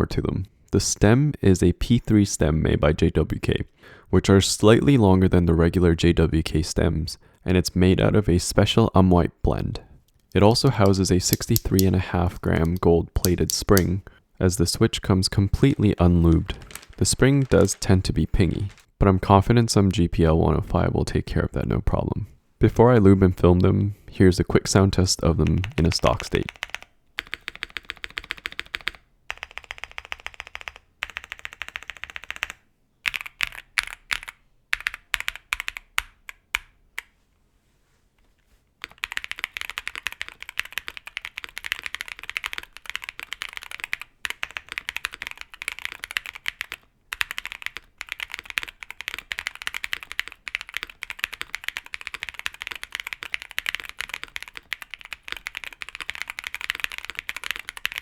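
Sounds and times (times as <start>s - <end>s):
typing on a mechanical keyboard: 10.8s - 14.0s, 15.6s - 18.9s, 25.5s - 36.7s, 38.8s - 58.0s.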